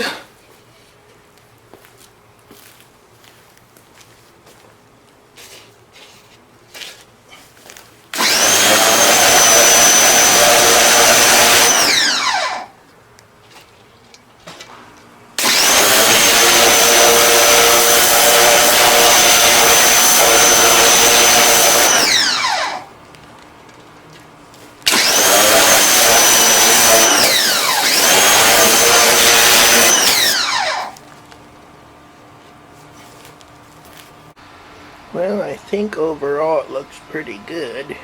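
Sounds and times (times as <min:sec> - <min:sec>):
pressure washer whining: 0:08.1 - 0:12.8, 0:15.4 - 0:23.0, 0:24.8 - 0:31.1.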